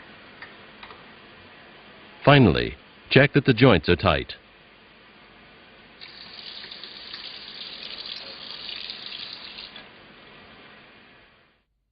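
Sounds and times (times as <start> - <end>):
water running from faucet: 6.0 - 9.9.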